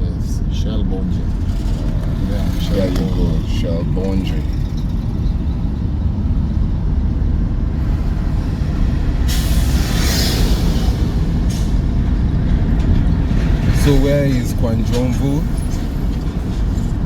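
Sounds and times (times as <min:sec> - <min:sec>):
road and engine rumble inside car: 0:00.0 - 0:17.0
loud hiss: 0:07.9 - 0:12.0.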